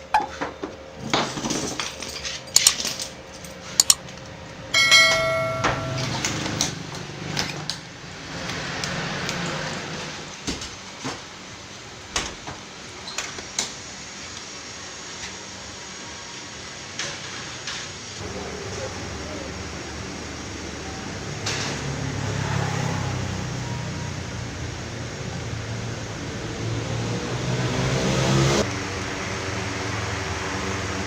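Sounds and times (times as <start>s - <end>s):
metal parts clinking: 1.3s - 4.2s
metal piece ringing: 4.7s - 6.6s.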